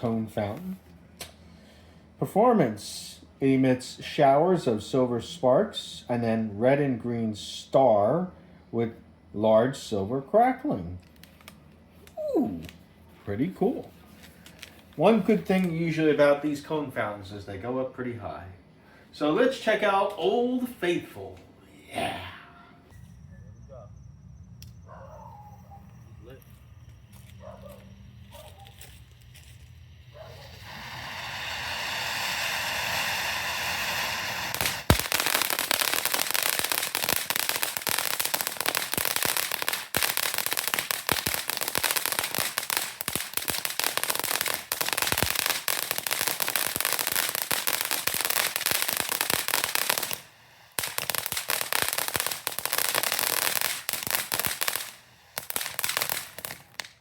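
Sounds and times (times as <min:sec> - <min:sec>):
firework fountain hissing: 0:27.9 - 0:57.0
dense crackling: 0:28.0 - 0:57.0
sharp crack: 0:30.3 - 0:57.0.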